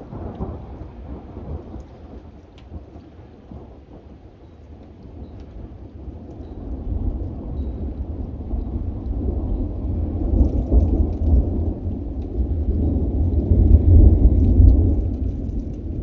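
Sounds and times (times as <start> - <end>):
thunder rumbling: 5.9 - 16.0.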